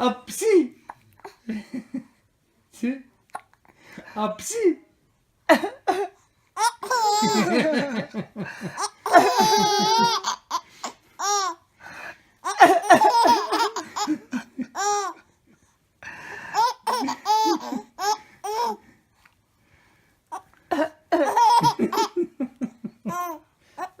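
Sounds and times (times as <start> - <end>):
baby laughing: 6.6 - 11.6, 12.4 - 15.2, 16.5 - 18.8, 20.3 - 22.3, 23.0 - 24.0.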